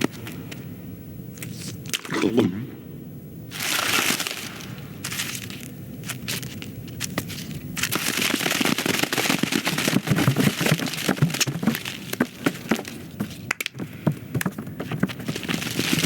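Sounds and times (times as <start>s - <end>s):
dense rustling and crackling: 3.5s - 13.6s.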